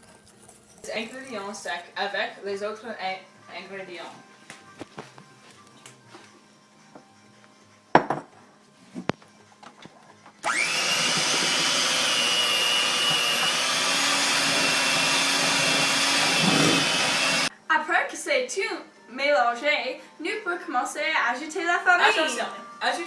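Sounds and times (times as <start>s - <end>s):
electric mixer beating dough: 10.4s - 17.5s.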